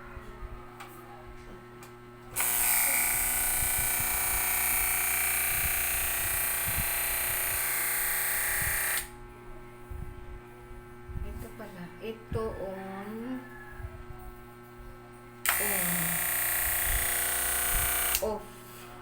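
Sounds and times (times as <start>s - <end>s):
electric hair clipper running: 2.3s - 9.2s, 15.5s - 18.3s.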